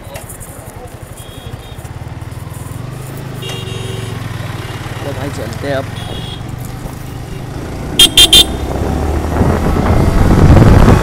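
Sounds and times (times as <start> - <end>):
vehicle horn beeping: 1.2 - 1.9, 3.4 - 4.9, 5.9 - 6.5, 8.0 - 8.6.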